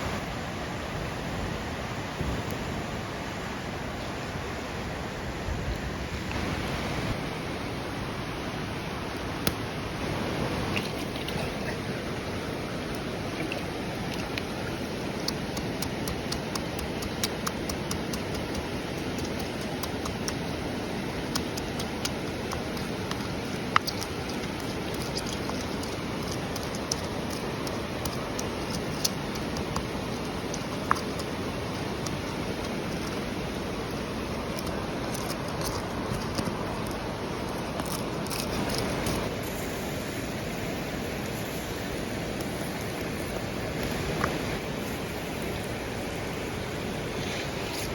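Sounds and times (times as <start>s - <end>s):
campfire crackling: 7.2s - 47.9s
sharp pops and snaps of fire: 12.9s - 39.8s.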